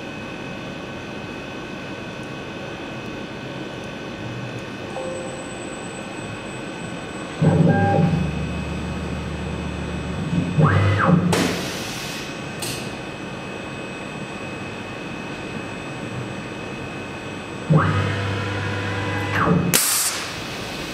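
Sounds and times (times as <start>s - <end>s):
machine background hum: 0.0s - 20.9s
sharp hiss of air: 19.8s - 20.9s.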